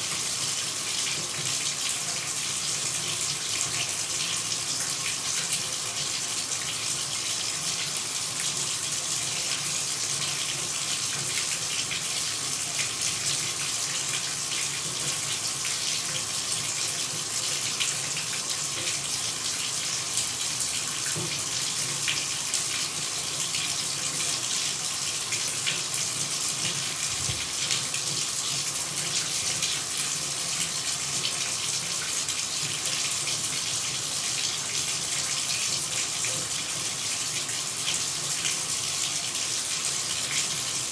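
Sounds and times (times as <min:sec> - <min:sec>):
running water pouring: 0:26.8 - 0:28.4.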